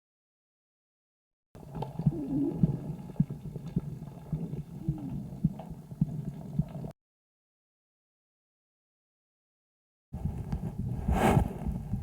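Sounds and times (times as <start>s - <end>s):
low muffled chest rumble: 10.2s - 12.0s.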